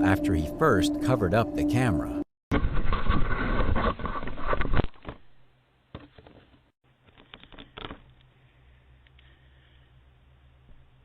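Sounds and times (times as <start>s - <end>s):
crackling rubbing on microphone: 2.5s - 5.2s
low steady hum: 6.9s - 11.0s.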